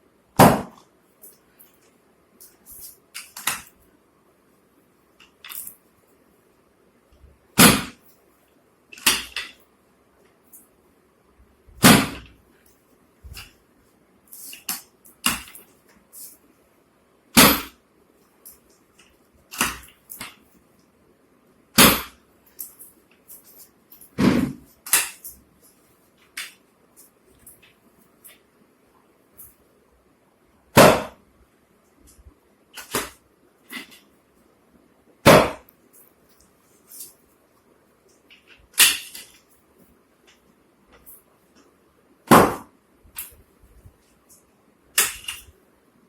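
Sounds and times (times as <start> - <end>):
sharp knocks and thumps: 24.2 - 25.1.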